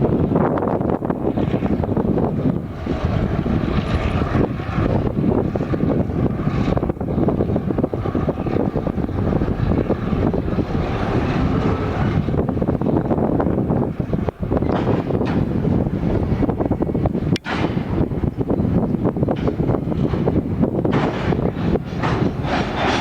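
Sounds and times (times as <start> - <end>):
diesel locomotive engine rumbling: 0.0 - 23.0.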